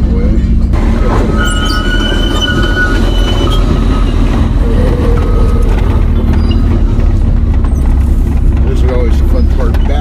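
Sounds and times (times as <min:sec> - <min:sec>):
vehicle engine rumbling: 0:00.0 - 0:10.0
high-pitched squeals: 0:00.9 - 0:08.0.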